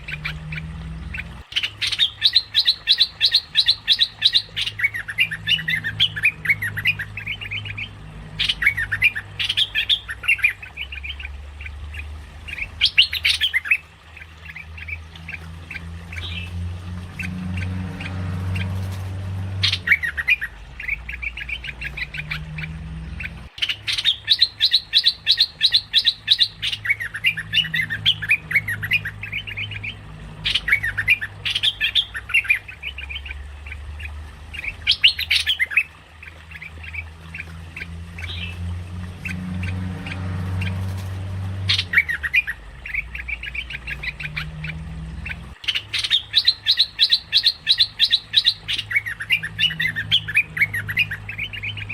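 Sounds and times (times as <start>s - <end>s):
low hum: 0.0s - 2.2s, 3.5s - 23.6s
bird chattering calls: 0.0s - 51.9s.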